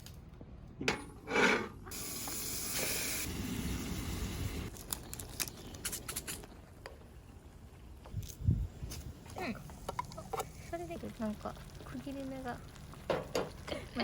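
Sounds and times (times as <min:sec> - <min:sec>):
fire popping and crackling: 0:03.3 - 0:14.0.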